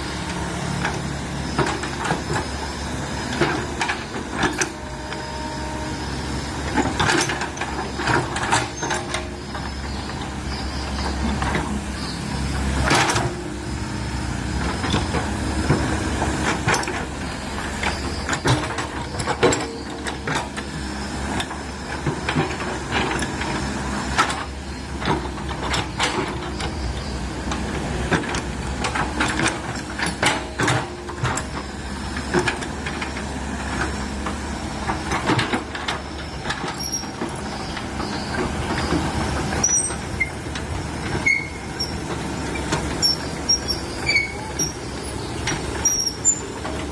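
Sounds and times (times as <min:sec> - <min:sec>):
excavator clanks and squeaks: 0:00.0 - 0:46.9
excavator diesel engine running: 0:00.0 - 0:46.9.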